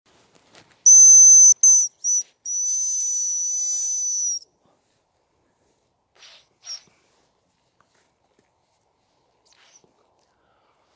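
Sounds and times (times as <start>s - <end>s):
high decoy whistle: 0.9s - 4.5s.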